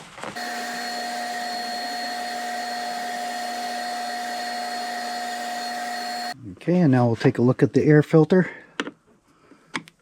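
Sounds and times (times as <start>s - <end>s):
machine whirring: 0.4s - 6.4s.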